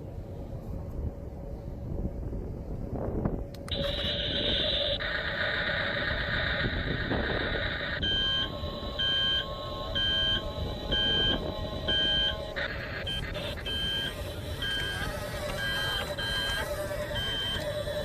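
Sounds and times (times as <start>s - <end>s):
model vehicle motor whirring: 3.6s - 18.0s
reversing alarm beeps: 3.7s - 18.0s.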